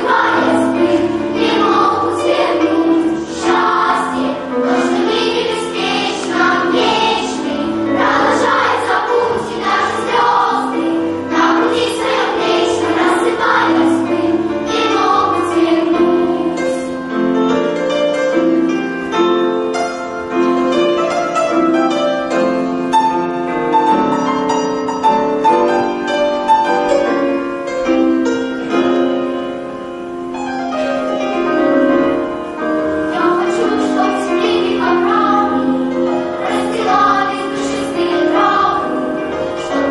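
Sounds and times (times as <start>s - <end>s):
children's choir singing: 0.0s - 19.4s, 31.3s - 39.9s.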